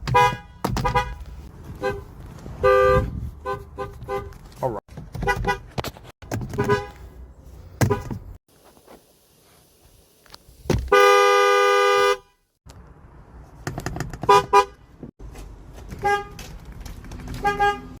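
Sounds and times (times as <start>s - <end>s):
car horn: 0.0s - 4.4s, 5.2s - 5.7s, 6.5s - 7.0s, 7.8s - 8.2s, 10.9s - 12.5s, 14.2s - 14.9s, 16.0s - 16.5s, 17.3s - 18.0s.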